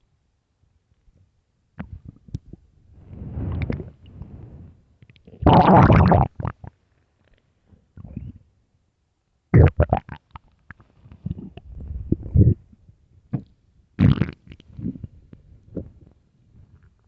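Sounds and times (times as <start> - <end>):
stomach growling and gurgling: 1.8 - 4.4, 5.1 - 6.8, 8.0 - 8.5, 9.6 - 12.8, 13.4 - 17.0.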